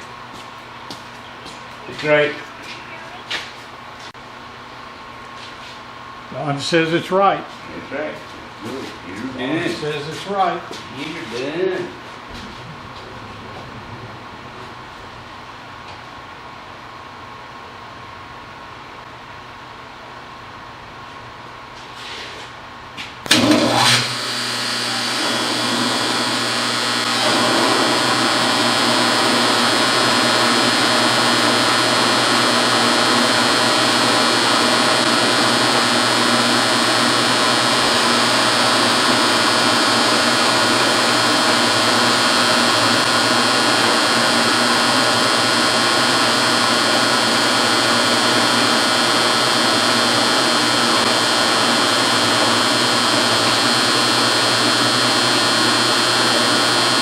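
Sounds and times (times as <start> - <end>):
shop machine motor whirring: 23.3 - 57.0.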